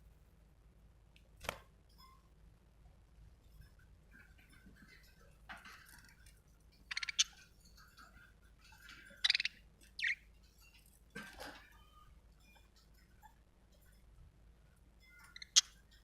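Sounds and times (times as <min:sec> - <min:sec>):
budgerigar chirping: 0:06.9 - 0:07.4, 0:09.2 - 0:10.2, 0:15.2 - 0:15.8.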